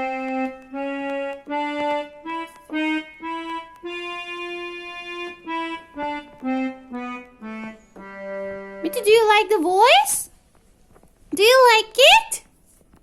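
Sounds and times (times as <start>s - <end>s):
electronic keyboard sustained notes: 0.0s - 9.4s.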